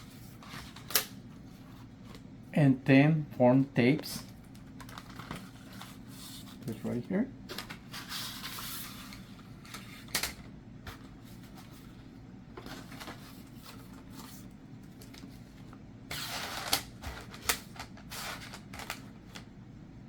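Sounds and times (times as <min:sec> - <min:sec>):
packaging rustling: 0:04.2 - 0:10.2, 0:12.6 - 0:19.5.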